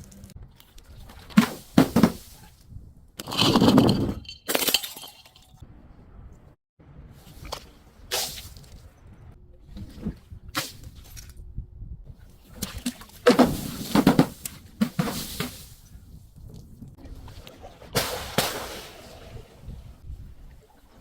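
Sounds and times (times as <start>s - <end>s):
objects being crushed: 1.2s - 2.5s, 13.2s - 15.7s.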